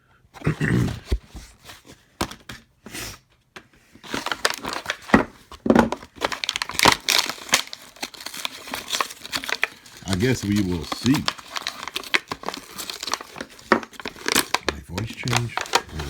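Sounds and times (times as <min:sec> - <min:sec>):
packaging crinkling and rustling: 0:04.0 - 0:16.0.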